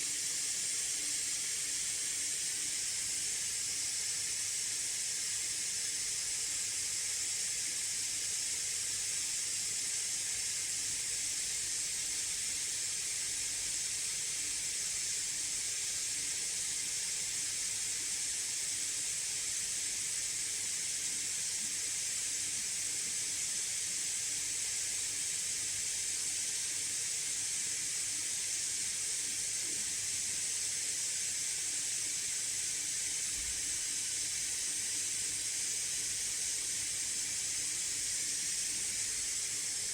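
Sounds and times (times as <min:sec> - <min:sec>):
laptop cooling fans hissing: 0:11.2 - 0:39.9.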